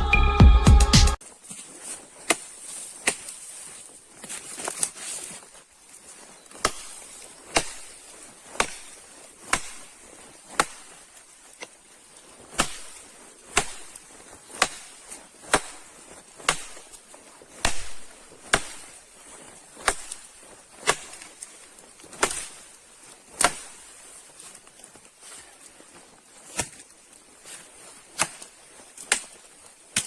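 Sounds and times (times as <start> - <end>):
axe chopping wood: 2.3 - 3.4, 6.5 - 9.9, 10.5 - 11.0, 12.6 - 19.0, 19.8 - 21.4, 22.1 - 22.7, 23.4 - 23.9, 26.5 - 26.9, 28.2 - 29.4.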